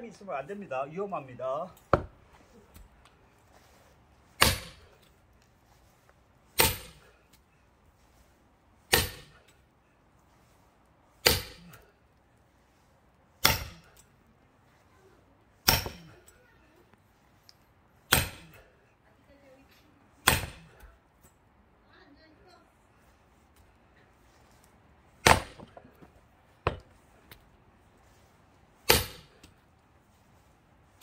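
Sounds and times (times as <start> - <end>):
sledgehammer striking axe: 1.8 - 2.2, 4.4 - 5.0, 6.6 - 7.2, 8.9 - 9.5, 11.2 - 11.9, 13.4 - 14.0, 15.6 - 16.3, 18.1 - 18.7, 20.2 - 20.8, 25.2 - 26.0, 26.7 - 26.9, 28.8 - 29.5.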